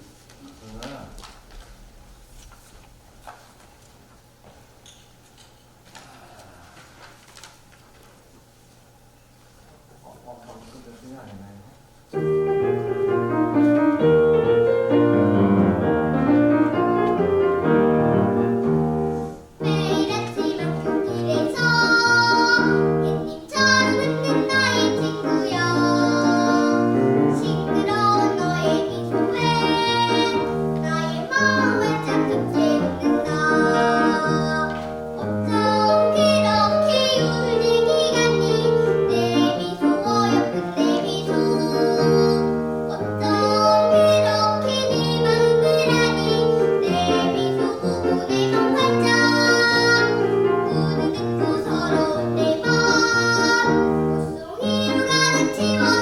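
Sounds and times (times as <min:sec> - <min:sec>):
instrumental accompaniment: 0:12.1 - 0:56.0
girl singing children's song: 0:19.6 - 0:56.0.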